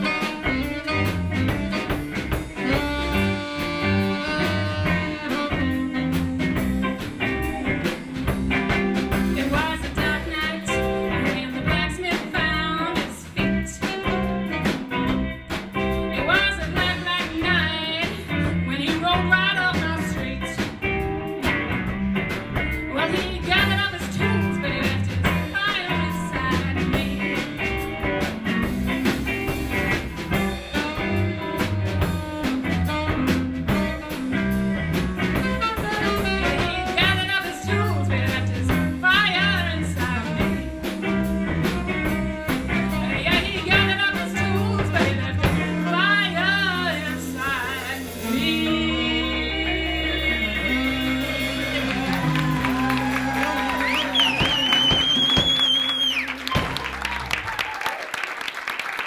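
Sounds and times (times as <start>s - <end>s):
guitar: 0.0s - 57.8s
live blues band playing: 0.0s - 59.0s
person singing: 35.8s - 40.7s, 42.7s - 54.6s.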